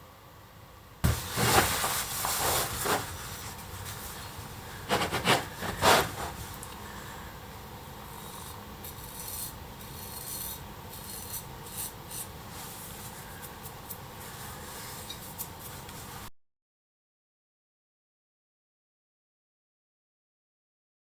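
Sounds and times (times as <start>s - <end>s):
axe scraping on sharpener: 8.2s - 12.3s.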